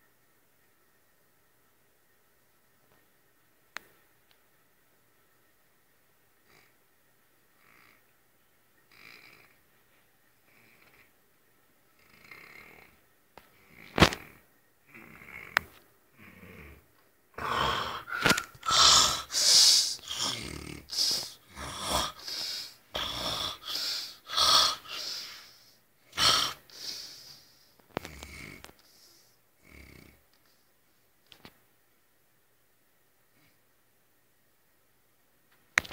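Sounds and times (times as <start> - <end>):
person snoring: 12.0 - 13.0, 13.6 - 16.8, 17.4 - 30.2.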